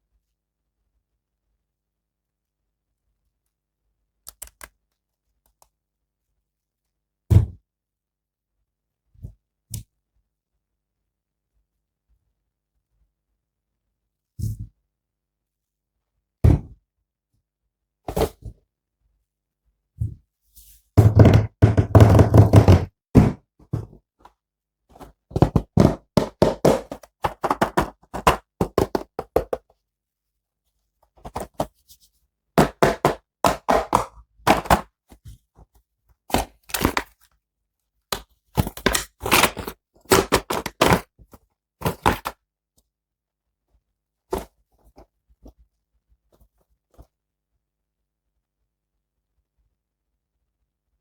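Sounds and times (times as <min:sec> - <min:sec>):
plastic toy parts clicking: 0:04.3 - 0:04.7.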